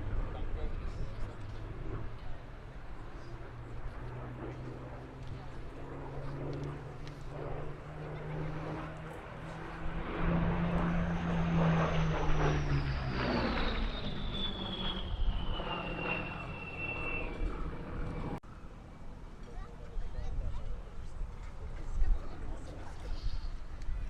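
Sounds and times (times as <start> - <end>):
piston aircraft engine flypast: 0.0 - 24.0
high whine gliding down: 3.2 - 18.4.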